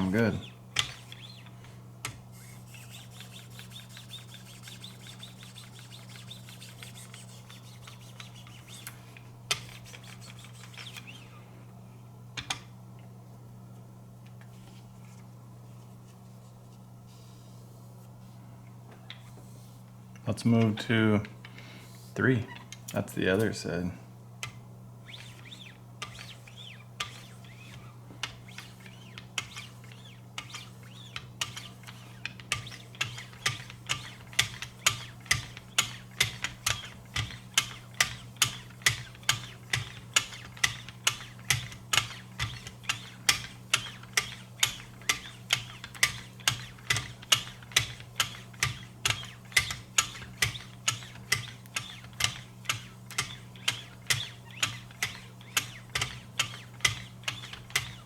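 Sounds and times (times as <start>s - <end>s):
knife sharpener scraping blade: 0.0s - 1.6s, 2.4s - 11.3s, 25.0s - 58.0s
low steady hum: 0.0s - 58.0s.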